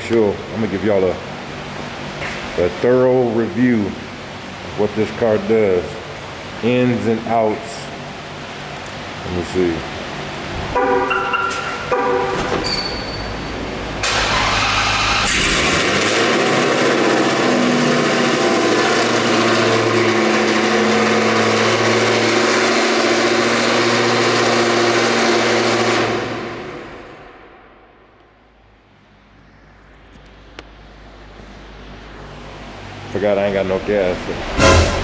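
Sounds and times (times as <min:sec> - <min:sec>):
car engine starting and idling: 0:00.0 - 0:27.9
dashboard chimes: 0:10.0 - 0:13.6.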